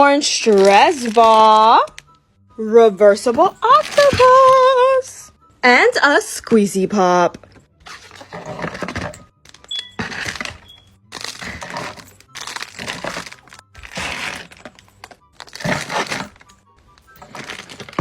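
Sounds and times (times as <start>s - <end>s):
plastic packaging rustling: 0.4s - 2.0s, 3.4s - 4.6s, 7.8s - 18.0s.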